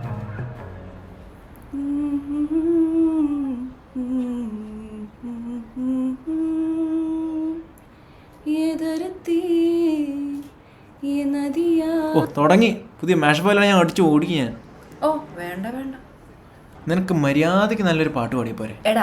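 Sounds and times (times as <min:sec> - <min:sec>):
person humming: 0:01.7 - 0:07.7.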